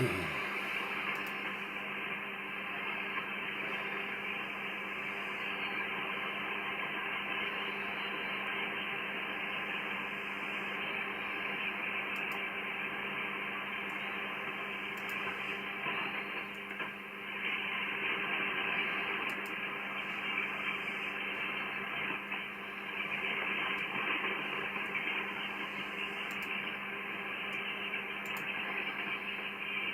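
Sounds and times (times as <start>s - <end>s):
faint steady tones: 0.0s - 29.9s
low steady radio tone: 0.0s - 29.9s
radio hiss and static: 0.0s - 29.9s.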